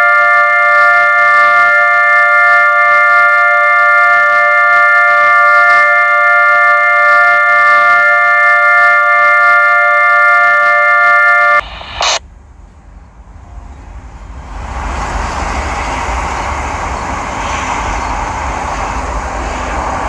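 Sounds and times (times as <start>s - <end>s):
siren chord: 0.0s - 11.6s
short burst of noise: 11.4s - 12.2s
rushing noise with low rumble: 11.6s - 20.0s.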